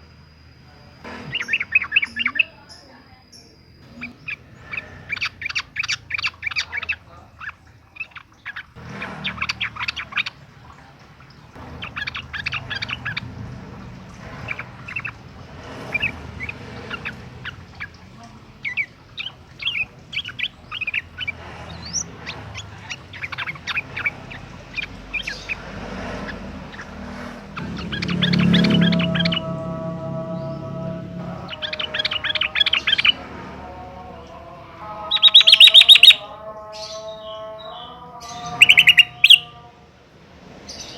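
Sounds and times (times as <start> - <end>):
bird chirping and whistling: 1.1 - 2.8, 3.4 - 10.4, 11.8 - 13.3, 14.4 - 15.2, 15.8 - 18.0, 18.6 - 25.6, 26.2 - 33.2, 35.0 - 36.3, 38.2 - 39.5.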